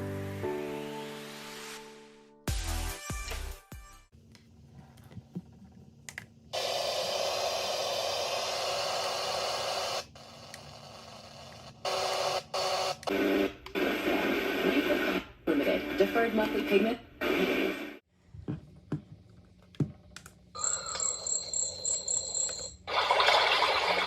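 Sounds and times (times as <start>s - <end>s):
radio static hiss: 13.1s - 18.0s
broadcast voice: 14.3s - 17.4s.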